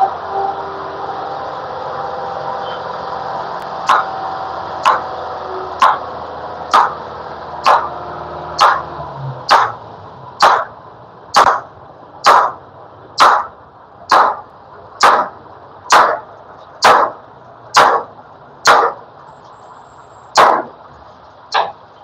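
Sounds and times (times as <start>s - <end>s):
hammer blows ringing: 3.8s - 4.2s, 4.8s - 6.1s, 6.7s - 7.0s, 7.6s - 8.0s, 8.6s - 8.9s, 9.5s - 9.8s, 10.4s - 10.7s, 11.4s - 12.6s, 13.2s - 13.5s, 17.8s - 19.0s.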